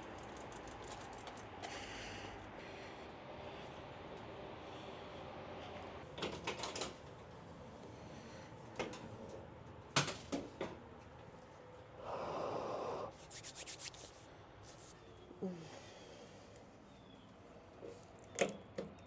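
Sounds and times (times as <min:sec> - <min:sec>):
rubbing scrape: 0:13.2 - 0:15.0.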